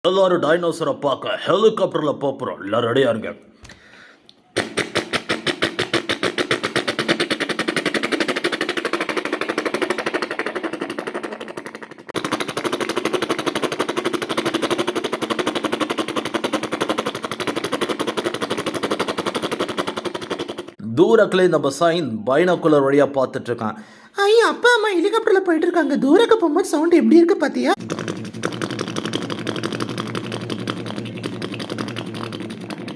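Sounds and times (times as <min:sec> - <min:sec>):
man imitating helicopter with mouth: 0:04.6 - 0:20.8, 0:27.7 - 0:32.9.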